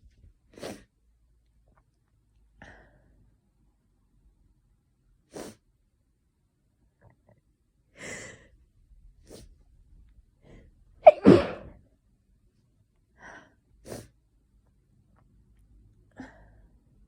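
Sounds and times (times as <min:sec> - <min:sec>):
person sneezing: 0:11.0 - 0:11.8.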